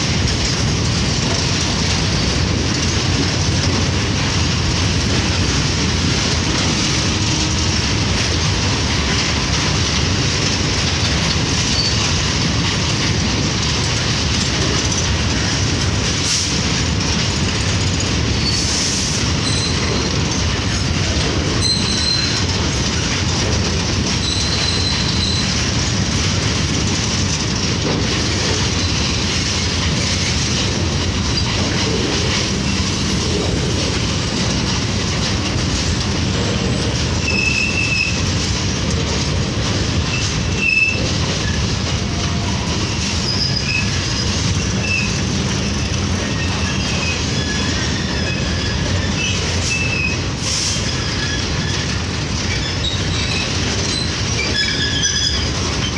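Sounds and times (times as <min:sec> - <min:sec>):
train wheels clattering on track: 0:00.0 - 0:55.9
high wheel squeals: 0:11.2 - 0:12.2, 0:17.9 - 0:20.5, 0:21.5 - 0:22.7, 0:24.1 - 0:25.8, 0:36.3 - 0:38.5, 0:40.0 - 0:42.4, 0:43.0 - 0:55.9.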